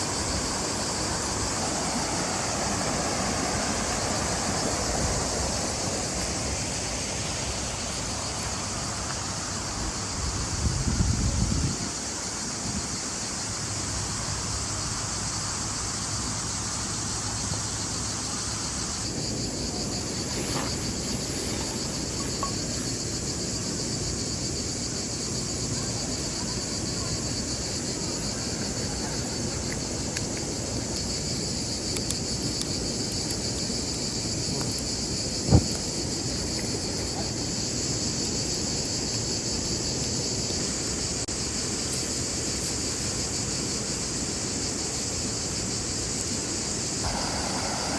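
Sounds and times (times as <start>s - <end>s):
crickets chirping: 0.0s - 47.9s
low steady noise: 47.0s - 47.9s.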